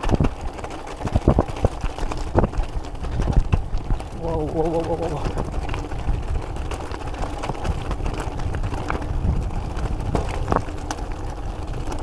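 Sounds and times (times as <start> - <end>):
bike tyres clattering on stones: 0.0 - 12.0
wind rumbling on microphone: 0.0 - 12.0.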